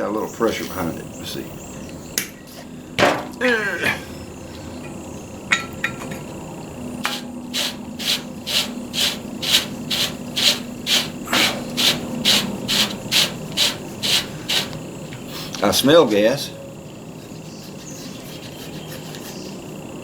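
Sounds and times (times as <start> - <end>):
short hissing puffs of gas: 7.1 - 15.6.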